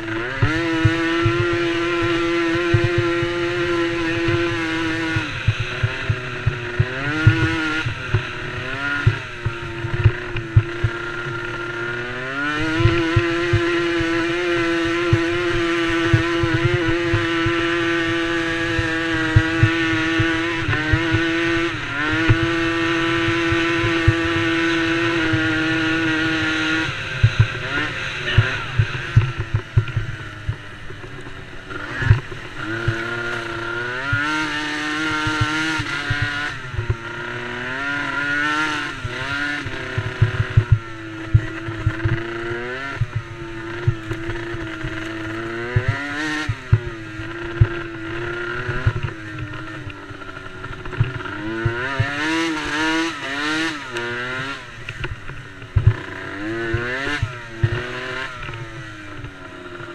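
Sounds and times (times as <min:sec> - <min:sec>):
quad engines revving: 0:00.0 - 0:59.9.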